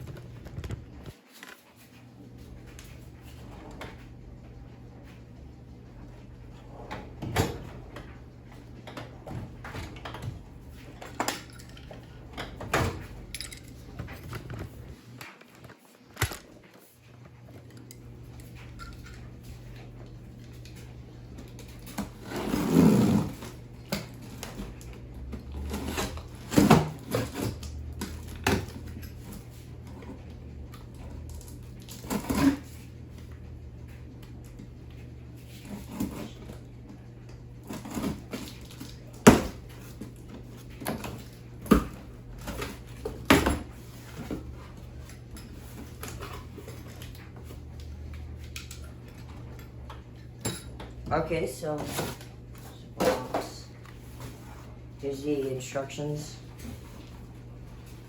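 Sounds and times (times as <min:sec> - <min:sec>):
steady low hum: 0:00.0 - 0:01.2, 0:01.8 - 0:58.0
rustling and scraping: 0:13.0 - 0:23.6, 0:51.3 - 0:55.2.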